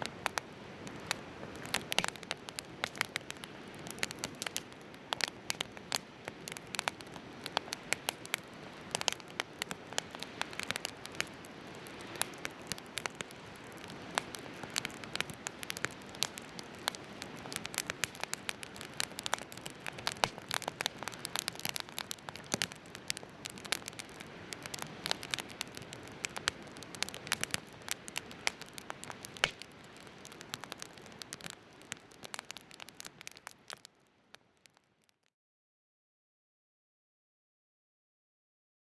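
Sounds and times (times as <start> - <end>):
steady low hiss: 0.0 - 35.0
firewood crackling and popping: 0.0 - 35.3.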